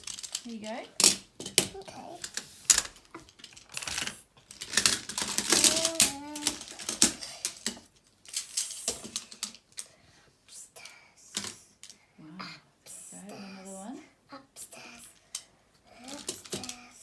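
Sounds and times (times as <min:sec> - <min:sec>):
plastic magnetic tiles clicking: 0:00.0 - 0:07.8
child's voice: 0:01.7 - 0:02.3, 0:05.4 - 0:06.9, 0:12.3 - 0:15.2, 0:15.9 - 0:17.0.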